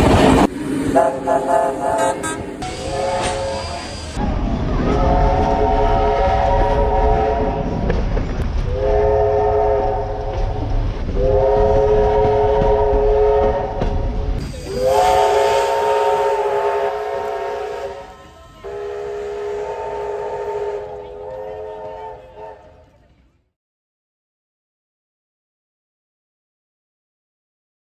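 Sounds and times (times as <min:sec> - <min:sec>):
locomotive horn chime blasts: 0:01.0 - 0:03.9, 0:14.6 - 0:22.6.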